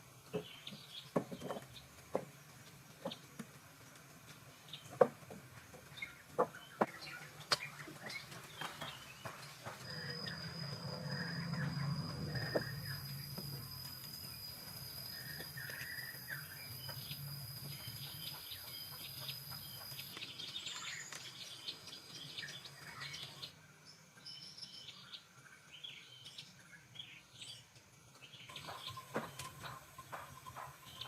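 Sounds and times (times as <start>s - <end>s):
birds chirping: 0.2s - 31.0s
high insect drone: 9.8s - 20.1s.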